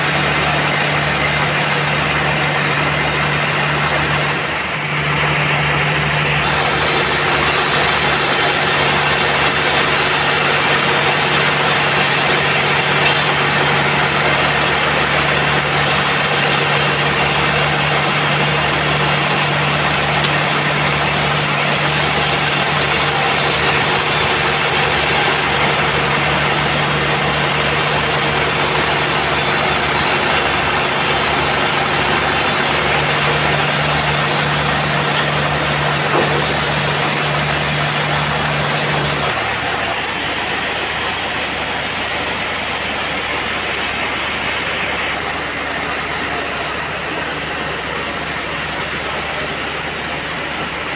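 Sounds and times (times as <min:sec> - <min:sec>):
sawmill machinery running: 0:00.0 - 0:50.9.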